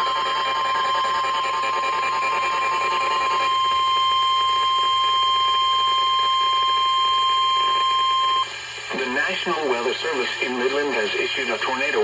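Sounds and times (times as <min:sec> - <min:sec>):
high-pitched alarm tone: 0:00.0 - 0:08.5.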